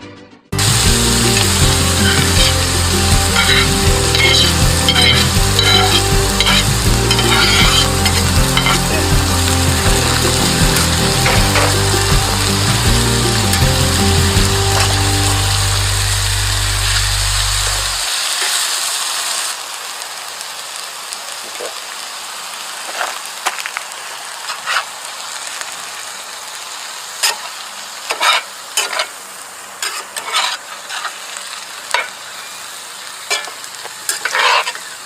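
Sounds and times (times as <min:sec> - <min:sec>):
meat sizzling in a skillet: 0:00.6 - 0:35.0
sharp pops and crackles: 0:22.8 - 0:24.9.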